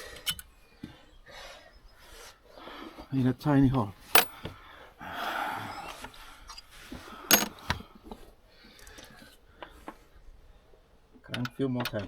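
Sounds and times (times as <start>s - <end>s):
hand tools clicking and knocking: 4.2s - 4.4s, 7.3s - 7.6s.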